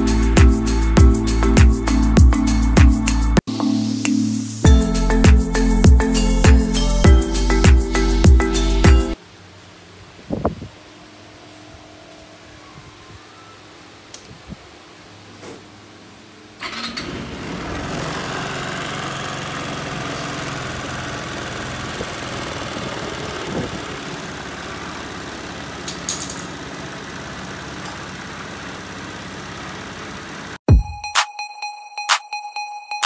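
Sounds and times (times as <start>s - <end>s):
scooter engine starting and running: 16.6s - 30.6s.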